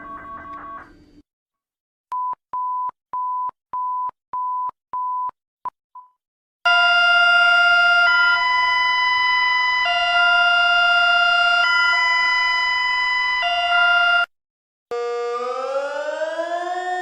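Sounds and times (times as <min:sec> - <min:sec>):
two-pitch electronic alarm tone: 0:00.0 - 0:01.1, 0:06.7 - 0:14.3, 0:14.9 - 0:16.4.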